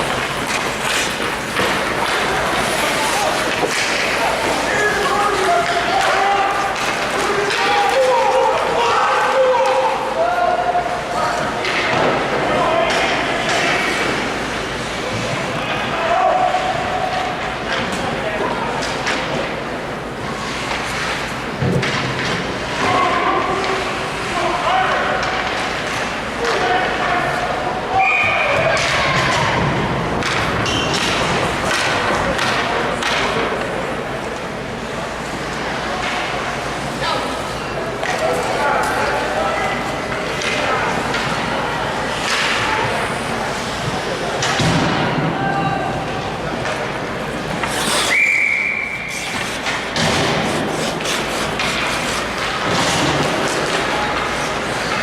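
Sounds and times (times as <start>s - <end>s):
pucks and sticks knocking boards: 0.0s - 9.8s, 11.4s - 15.3s, 20.6s - 24.0s, 28.5s - 33.8s, 40.0s - 41.5s, 42.1s - 43.0s, 43.8s - 55.0s
ice rink background noise: 0.0s - 55.0s.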